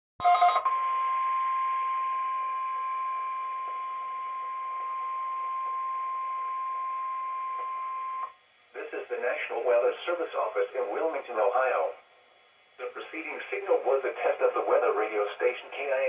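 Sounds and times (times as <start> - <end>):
steady high alarm beep: 0.2 - 8.3
faint radio hiss: 8.3 - 16.0.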